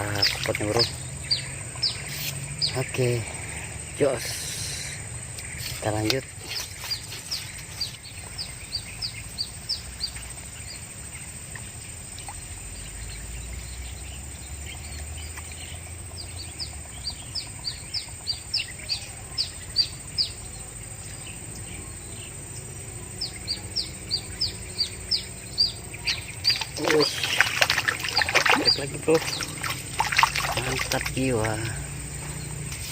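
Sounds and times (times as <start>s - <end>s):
bird chirping: 0.0s - 32.9s
faint high hum: 16.9s - 32.9s.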